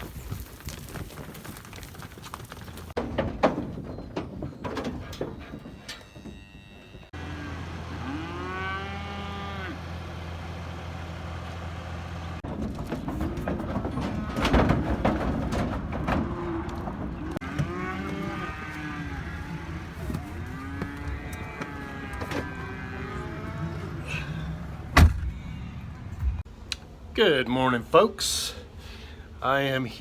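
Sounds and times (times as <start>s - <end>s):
knocks and clatter: 0.6s - 6.0s, 12.4s - 17.8s
cow mooing: 6.2s - 9.9s, 17.4s - 25.8s.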